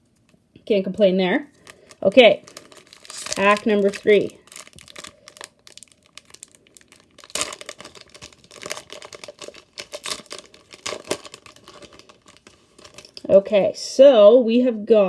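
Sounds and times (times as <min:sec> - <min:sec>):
foil pack crinkling: 0:01.5 - 0:13.4
foil ripping: 0:01.6 - 0:13.2.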